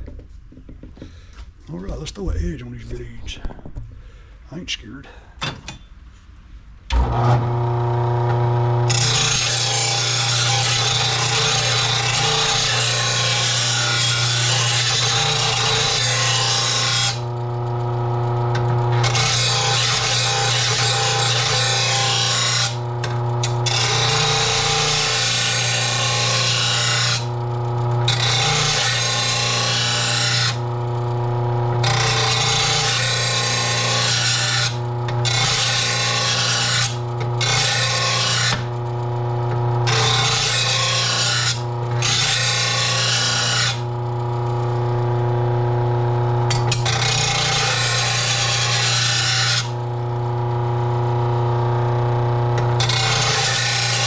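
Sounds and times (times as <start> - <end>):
grinder sharpening metal blade: 52.8 - 54.0.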